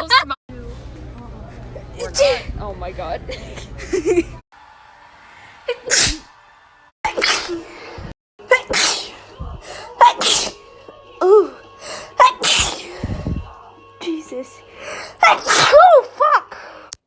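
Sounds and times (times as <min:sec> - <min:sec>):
person sneezing: 0:05.8 - 0:06.2, 0:07.1 - 0:07.6, 0:08.5 - 0:09.2, 0:10.0 - 0:10.6, 0:12.2 - 0:13.0, 0:15.3 - 0:15.9.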